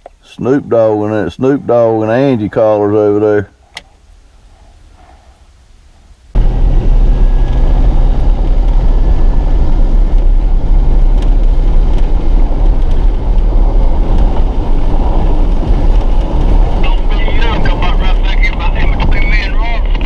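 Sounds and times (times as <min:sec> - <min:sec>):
road and wind noise: 0:00.0 - 0:20.0
vehicle rumble driving: 0:06.2 - 0:20.0.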